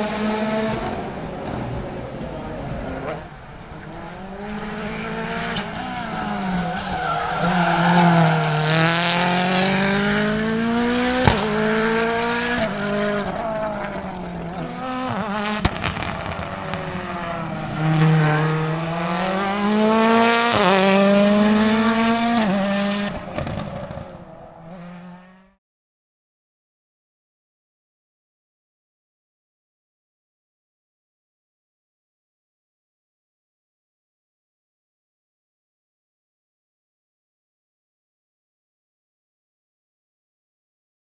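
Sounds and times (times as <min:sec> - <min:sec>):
rally car engine revving: 0:00.0 - 0:25.6.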